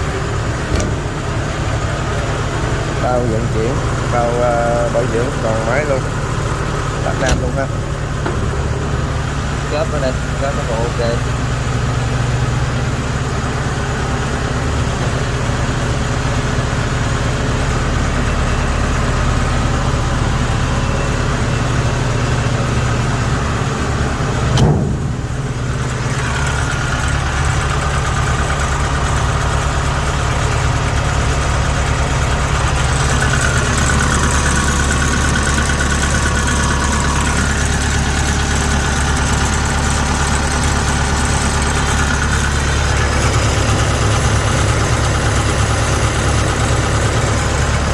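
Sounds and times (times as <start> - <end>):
diesel engine idling: 0.0 - 47.9
loud bump: 24.5 - 25.8.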